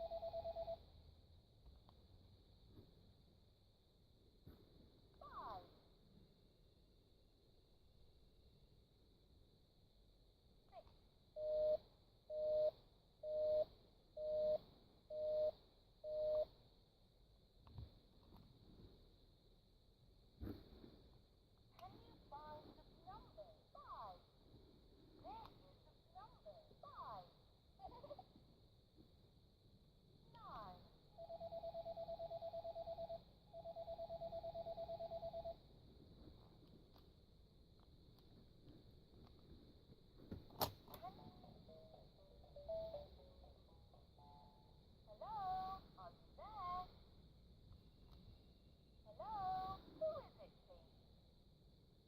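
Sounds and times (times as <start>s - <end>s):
toy phone busy-signal beeps: 0.0s - 0.8s, 11.4s - 16.5s, 31.2s - 35.6s, 41.0s - 43.3s.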